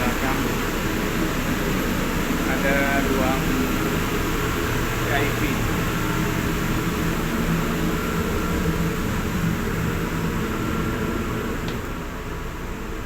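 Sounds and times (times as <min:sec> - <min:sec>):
ship machinery droning: 0:00.0 - 0:13.0.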